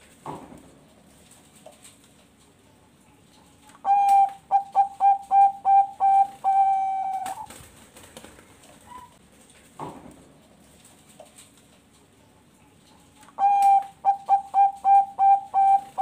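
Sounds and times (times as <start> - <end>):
dove singing: 3.6 - 7.5, 13.2 - 16.0.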